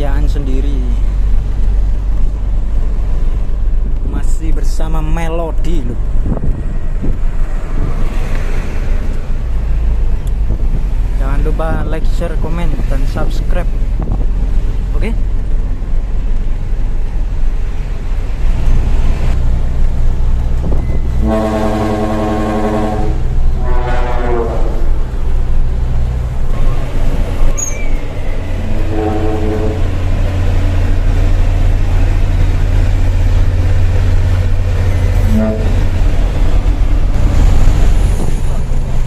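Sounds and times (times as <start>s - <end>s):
truck engine drone: 0.0s - 39.0s
truck air horn blasts: 21.1s - 24.9s, 28.6s - 30.2s, 35.2s - 36.0s.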